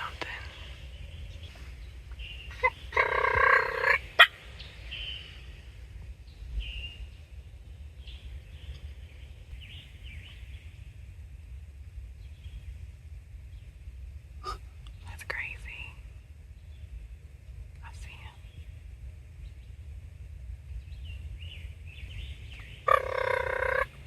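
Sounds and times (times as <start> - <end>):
small birds chirping: 0.0 - 11.0, 14.4 - 17.1, 17.8 - 19.9, 20.6 - 24.0
turkey gobbling: 2.6 - 4.4, 22.9 - 24.0.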